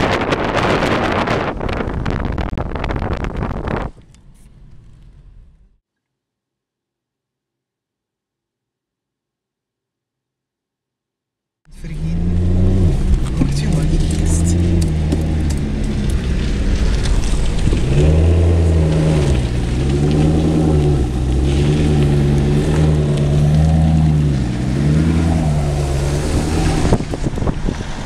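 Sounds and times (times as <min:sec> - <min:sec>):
car engine revving: 0:11.7 - 0:28.0.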